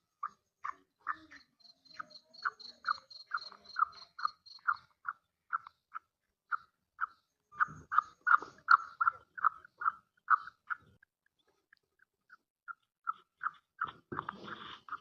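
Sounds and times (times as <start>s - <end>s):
francolin calling: 0.2s - 10.8s.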